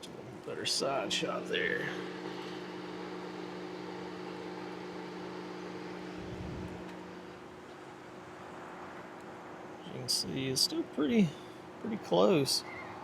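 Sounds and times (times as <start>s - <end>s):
mechanical hum with low drone: 0.0s - 13.0s
brief low rumble: 6.2s - 7.0s.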